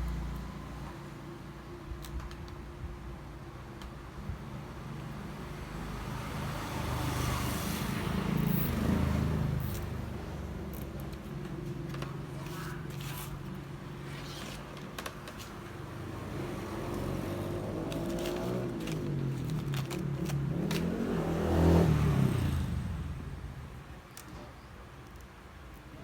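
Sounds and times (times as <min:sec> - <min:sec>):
vehicle engine passing by: 0:05.6 - 0:10.8, 0:16.0 - 0:23.6.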